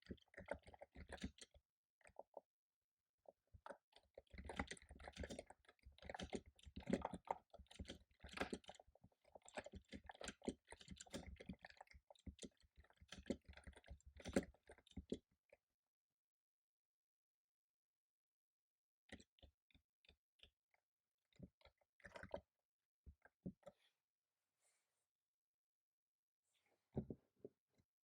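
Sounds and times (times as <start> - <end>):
typing on computer keyboard: 3.9 - 15.2.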